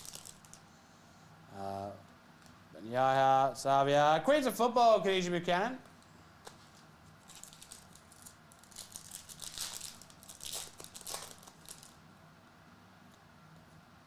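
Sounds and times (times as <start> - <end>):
wrapper crinkling and tearing: 0.0 - 0.6, 6.5 - 12.0.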